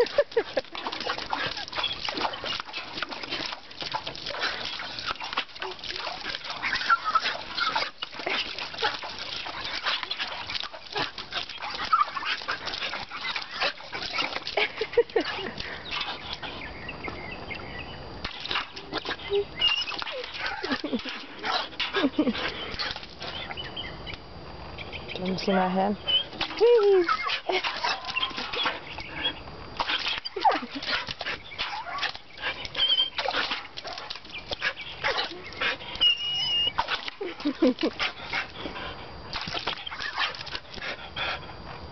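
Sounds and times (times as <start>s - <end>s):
dog whining excitedly: 6.6s - 8.5s, 11.5s - 12.5s, 19.0s - 20.8s, 26.1s - 29.4s, 31.6s - 33.4s, 35.0s - 37.0s.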